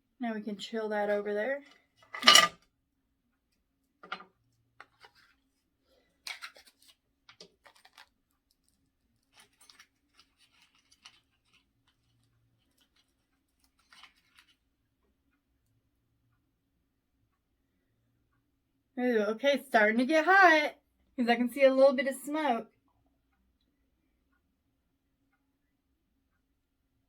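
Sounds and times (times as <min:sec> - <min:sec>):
object clunking on table: 0:04.0 - 0:04.3
light clicks and rustles: 0:06.2 - 0:14.6.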